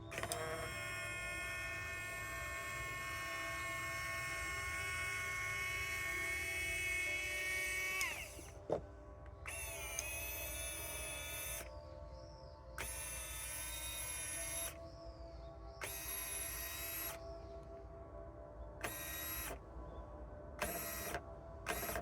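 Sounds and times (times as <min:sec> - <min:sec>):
electric motor whining: 0:00.0 - 0:15.0, 0:15.7 - 0:17.5, 0:18.8 - 0:19.6, 0:20.6 - 0:22.0.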